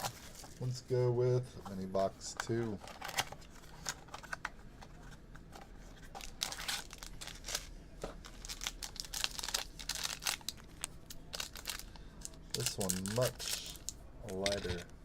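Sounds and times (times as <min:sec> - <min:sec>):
card packaging tearing and crinkling: 0:06.0 - 0:14.8.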